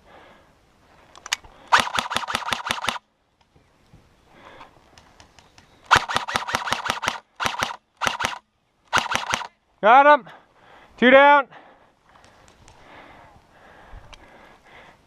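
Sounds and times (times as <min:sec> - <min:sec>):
airsoft rifle firing bursts: 0:01.7 - 0:03.0, 0:05.9 - 0:09.5.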